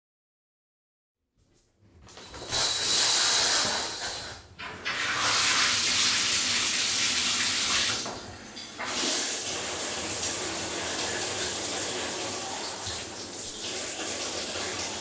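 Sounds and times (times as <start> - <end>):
shower spray hissing: 2.5 - 4.2, 8.9 - 15.0.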